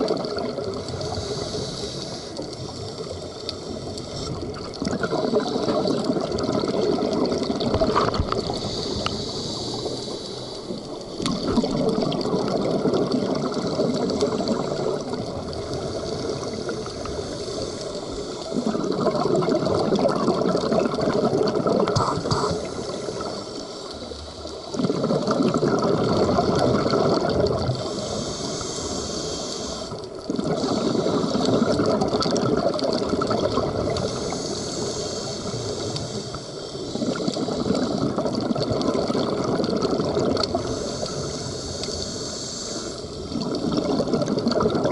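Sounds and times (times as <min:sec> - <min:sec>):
regulator inhalation hiss: 0:00.8 - 0:04.4, 0:08.3 - 0:11.3, 0:13.5 - 0:18.9, 0:21.9 - 0:24.8, 0:27.7 - 0:31.8, 0:33.8 - 0:38.3, 0:40.5 - 0:43.6
bubbly regulator exhalations: 0:04.2 - 0:10.0, 0:10.6 - 0:17.3, 0:18.5 - 0:23.5, 0:24.7 - 0:28.8, 0:30.1 - 0:36.0, 0:36.9 - 0:41.3, 0:43.2 - 0:44.9.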